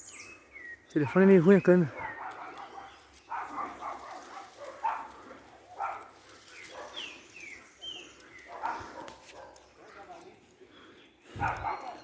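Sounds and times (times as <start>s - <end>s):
distant animal barking calls: 1.6s - 10.1s, 11.2s - 12.0s.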